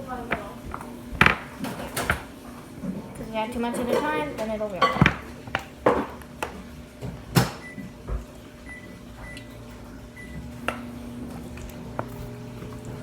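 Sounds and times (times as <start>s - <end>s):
steady low hum: 5.0s - 13.0s.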